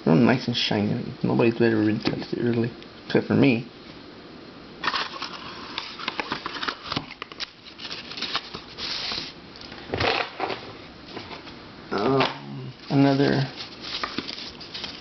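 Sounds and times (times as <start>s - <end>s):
scraping rustle: 7.6s - 9.4s, 12.8s - 15.0s.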